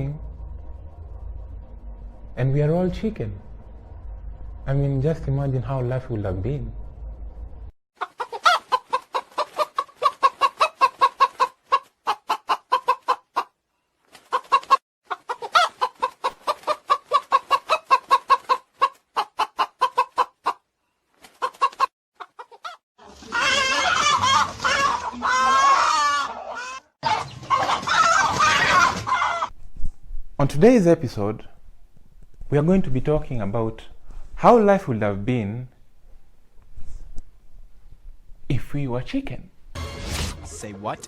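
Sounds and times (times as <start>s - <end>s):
low rumble: 0.0s - 7.8s
chickens clucking: 8.0s - 29.5s.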